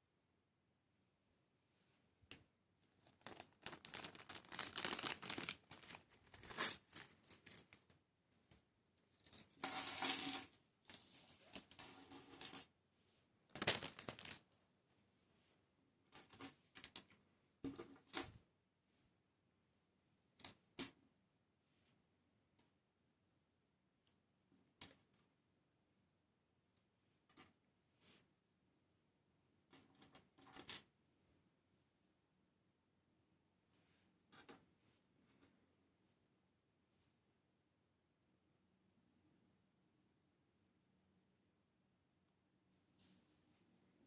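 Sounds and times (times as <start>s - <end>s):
small parts clicking and clattering: 3.1s - 10.5s.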